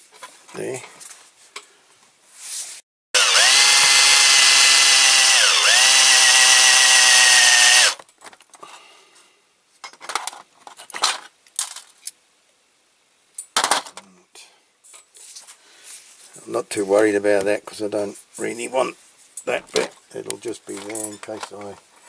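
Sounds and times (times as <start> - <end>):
small electric drill drilling metal: 3.2 - 8.0
light metallic clicks and rattles: 19.4 - 21.9.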